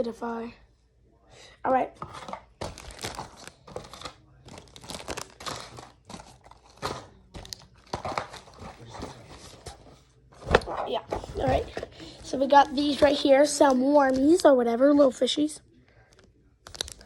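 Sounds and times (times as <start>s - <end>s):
packaging crinkling and rustling: 2.2s - 9.9s, 16.6s - 17.0s.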